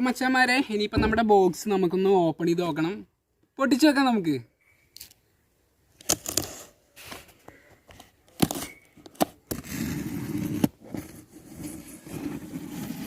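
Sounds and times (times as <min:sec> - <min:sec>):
packaging being torn open: 0:06.0 - 0:06.6, 0:08.3 - 0:09.8
scraping and rustling: 0:09.5 - 0:13.0.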